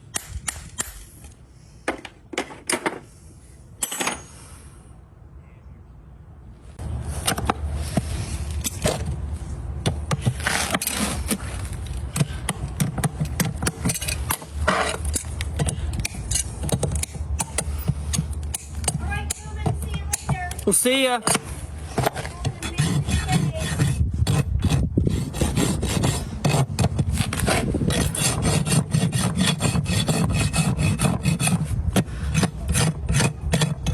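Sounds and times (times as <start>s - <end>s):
rasp filing a hoof: 10.1s - 20.7s, 21.3s - 33.9s.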